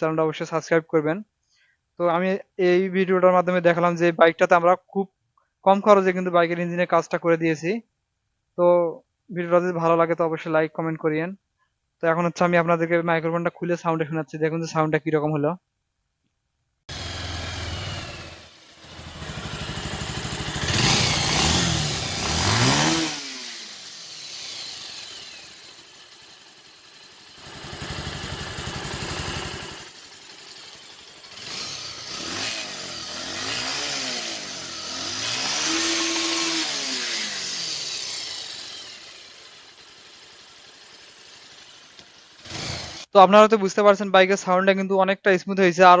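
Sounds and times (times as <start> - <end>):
motorcycle engine revving: 16.9 - 43.1.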